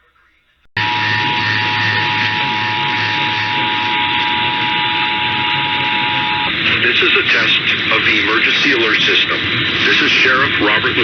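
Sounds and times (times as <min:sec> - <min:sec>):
radio static hiss: 0:00.0 - 0:11.0
two-tone alert signal: 0:00.8 - 0:06.6
low hum: 0:00.8 - 0:11.0.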